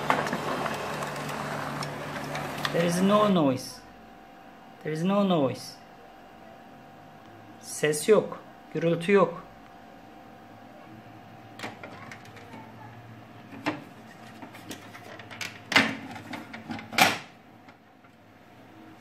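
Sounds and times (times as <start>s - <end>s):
laser printer humming: 0.0s - 15.1s.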